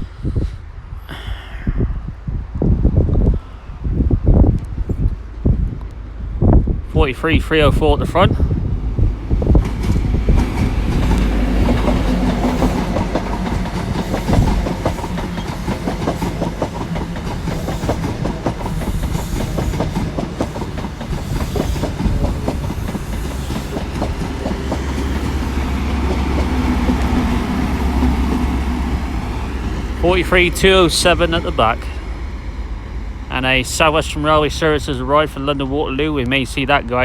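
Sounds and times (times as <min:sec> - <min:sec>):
diesel train engine passing: 0:06.0 - 0:37.0
train wheels clattering over rail joints: 0:09.5 - 0:31.3.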